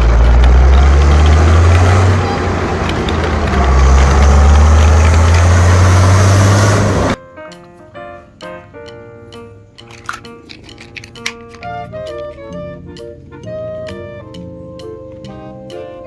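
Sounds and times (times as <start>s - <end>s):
vehicle engine running: 0.0s - 7.2s.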